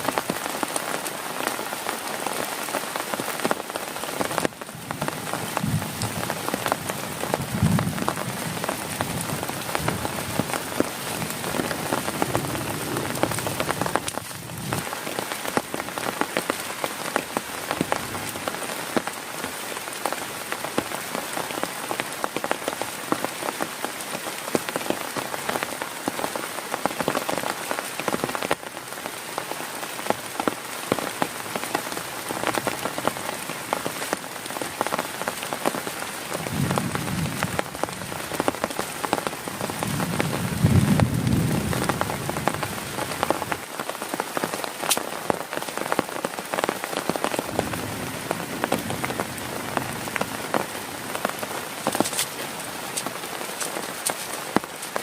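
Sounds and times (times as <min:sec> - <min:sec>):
heavy rain on a tent: 0:00.0 - 0:55.0.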